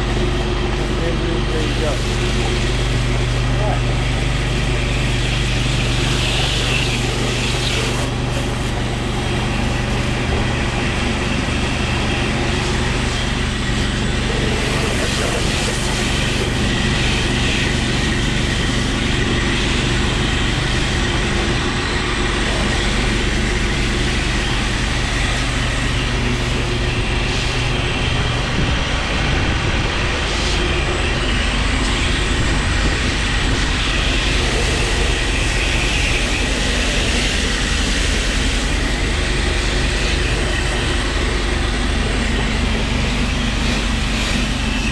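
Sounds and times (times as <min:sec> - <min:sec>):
water spray hissing: 0:00.0 - 0:19.2
pressure washer engine hum: 0:00.0 - 0:44.9.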